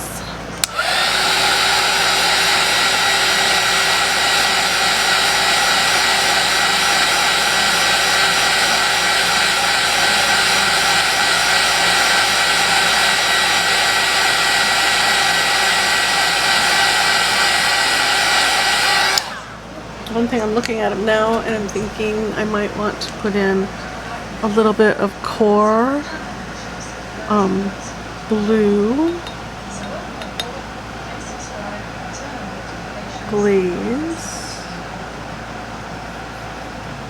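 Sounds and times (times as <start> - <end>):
heat tool blowing hot air: 0.0 - 25.3.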